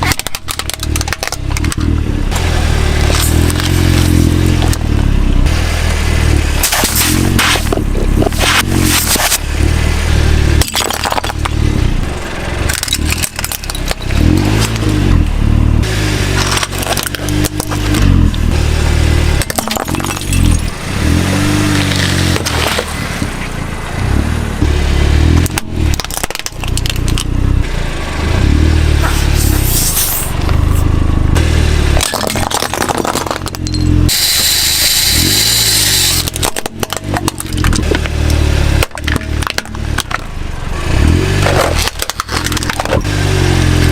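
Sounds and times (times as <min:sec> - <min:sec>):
objects cracking and crunching: 0:00.0 - 0:04.9, 0:06.6 - 0:09.7, 0:10.6 - 0:11.8, 0:12.6 - 0:15.1, 0:16.3 - 0:18.5, 0:19.4 - 0:23.3, 0:25.3 - 0:27.4, 0:32.0 - 0:34.0, 0:36.2 - 0:40.3, 0:41.0 - 0:43.8
vehicle engine revving: 0:00.0 - 0:43.9
loud hissing crunch: 0:06.2 - 0:10.0, 0:29.0 - 0:30.9, 0:34.1 - 0:36.3.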